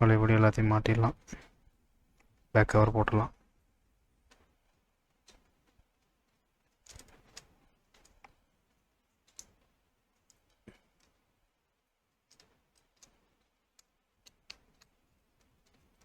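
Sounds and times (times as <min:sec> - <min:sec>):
clicks of small plastic parts: 0:04.3 - 0:08.4, 0:09.2 - 0:11.3, 0:12.2 - 0:16.0.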